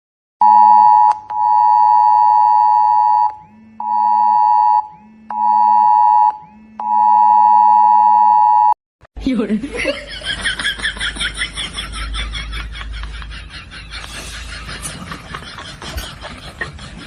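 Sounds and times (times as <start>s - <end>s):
phone alert beeps: 0.4s - 8.7s.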